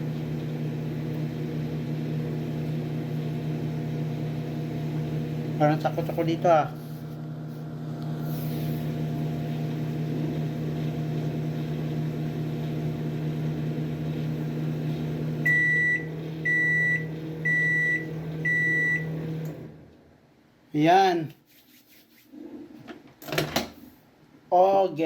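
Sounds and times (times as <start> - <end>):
microwave oven humming: 0.0 - 20.2
microwave beeps: 15.2 - 19.5.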